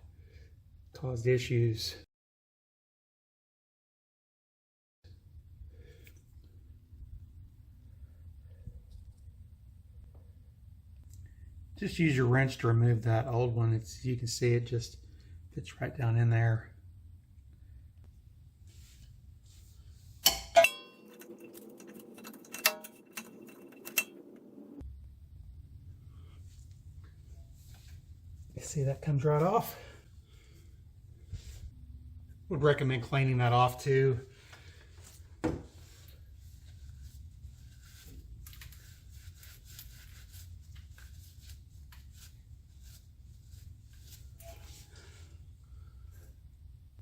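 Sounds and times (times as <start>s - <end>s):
steady low hum: 5.1s - 47.0s
light metal ticks and clicks: 20.2s - 24.2s
scratching and clicking handling noises: 20.2s - 24.4s, 36.0s - 44.7s
wrench clinking on metal fitting: 20.3s - 24.2s.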